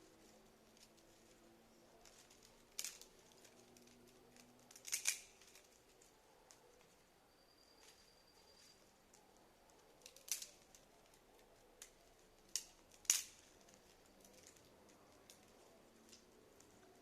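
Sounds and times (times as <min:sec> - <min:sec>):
campfire crackling: 0:00.0 - 0:07.3.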